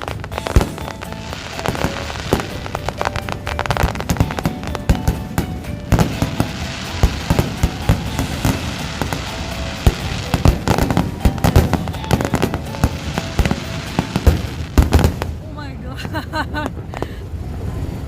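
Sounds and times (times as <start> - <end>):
fireworks bangs and pops: 0.0 - 15.4
fireworks crackling hiss: 0.0 - 15.7.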